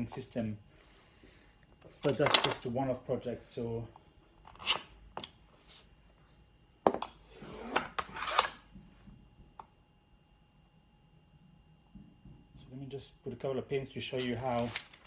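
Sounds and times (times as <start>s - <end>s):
tools clattering on workbench: 2.0s - 2.7s.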